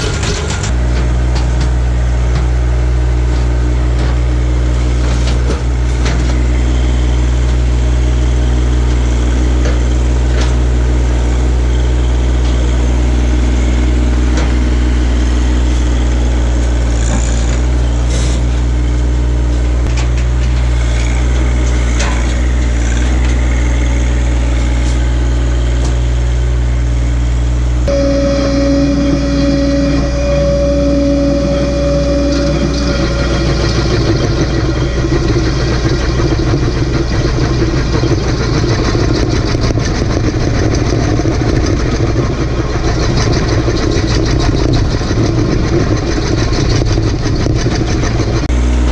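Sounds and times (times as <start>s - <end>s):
tractor engine running: 0.0s - 48.9s
steady whine: 27.2s - 48.9s.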